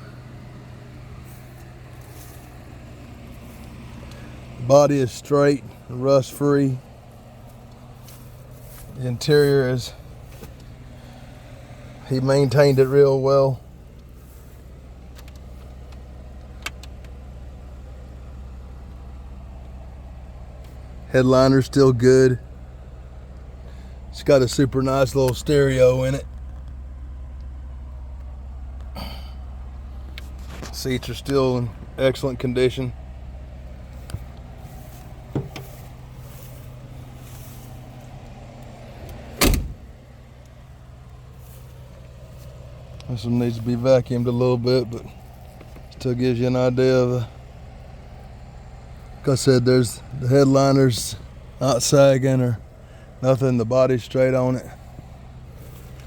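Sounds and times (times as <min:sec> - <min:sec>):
low engine hum: 0:00.0 - 0:56.0
vehicle door thumping shut: 0:35.3 - 0:35.8, 0:39.1 - 0:39.9.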